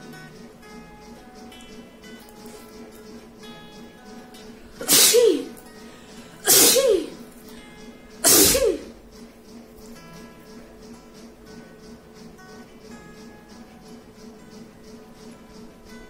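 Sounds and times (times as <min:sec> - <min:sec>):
woman sneezing: 0:04.8 - 0:05.6, 0:06.4 - 0:07.2, 0:08.2 - 0:09.0.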